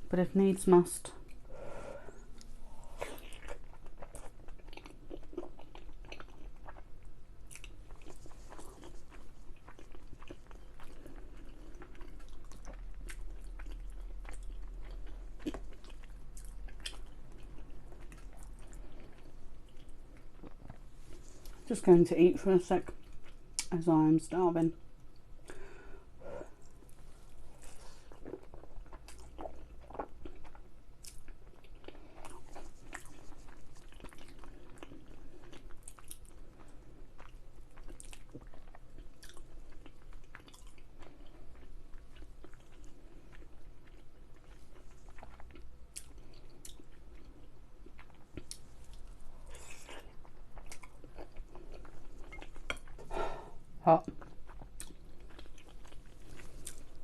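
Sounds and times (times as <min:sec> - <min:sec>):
person chewing and biting food: 0:02.1 - 0:21.6, 0:26.5 - 0:57.0.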